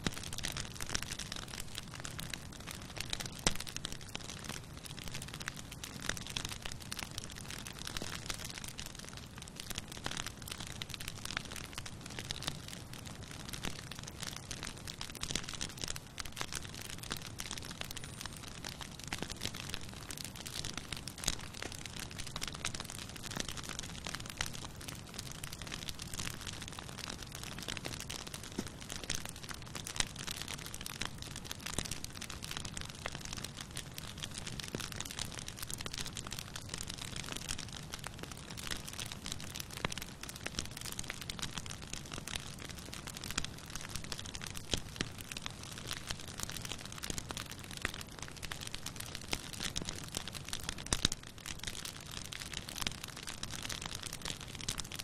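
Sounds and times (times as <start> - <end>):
campfire crackling: 0.0 - 55.0
fire popping: 0.0 - 55.0.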